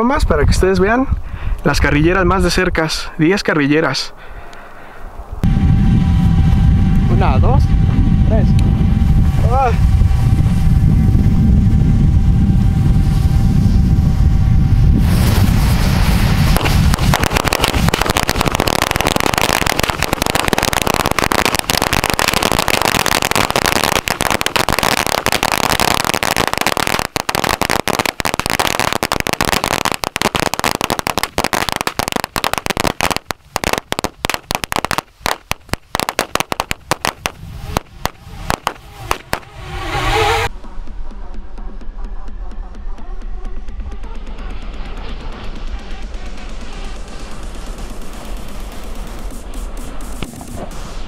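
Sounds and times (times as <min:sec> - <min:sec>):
firecrackers crackling and popping: 0:08.6 - 0:40.5, 0:43.4 - 0:51.0.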